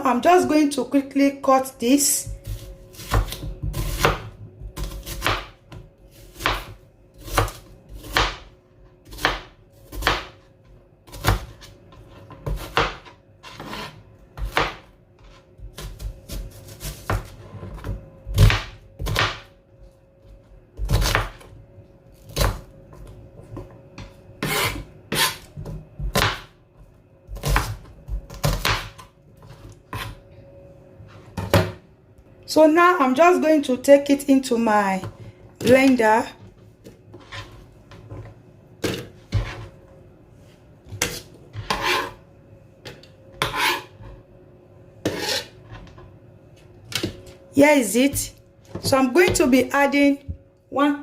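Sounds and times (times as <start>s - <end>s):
knife cutting onion on board: 2.2s - 19.5s, 20.8s - 21.5s, 22.2s - 26.6s, 27.3s - 30.2s, 36.8s - 39.7s, 40.9s - 42.2s, 42.8s - 44.2s, 45.0s - 45.9s.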